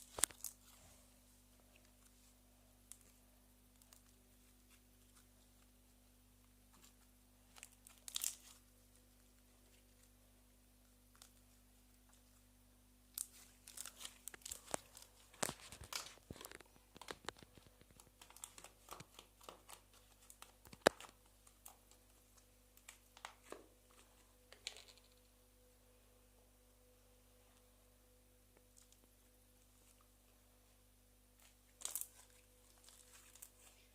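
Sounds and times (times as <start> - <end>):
slime crackling and popping: 13.2 - 21.8.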